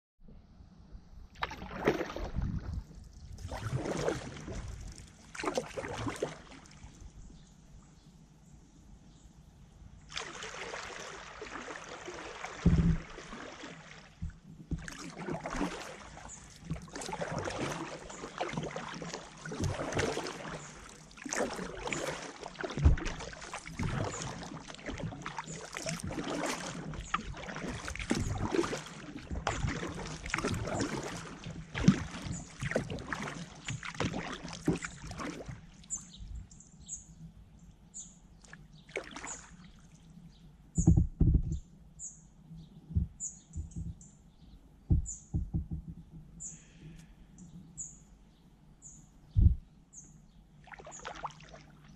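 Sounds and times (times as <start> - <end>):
paddle splashing water: 1.3 - 7.2, 10.1 - 36.5, 38.4 - 40.1, 50.6 - 51.9
paddle knocks: 12.6 - 13.4, 14.2 - 15.8, 22.1 - 34.9, 40.8 - 41.6, 44.9 - 46.3
bird chirping: 40.3 - 50.5.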